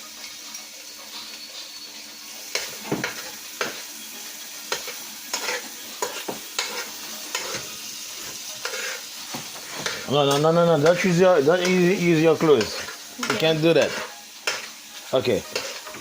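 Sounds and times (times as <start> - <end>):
food sizzling in a frying pan: 0.0 - 16.0
utensil scraping against pan: 4.7 - 16.0.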